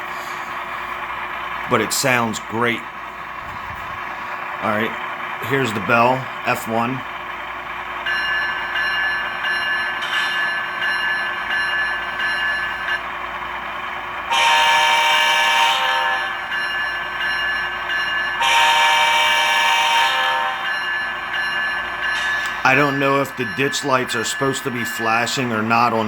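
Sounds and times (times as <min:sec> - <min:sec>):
locomotive bell ringing: 0:04.6 - 0:26.0
locomotive horn blasts: 0:14.3 - 0:16.5, 0:18.4 - 0:20.7.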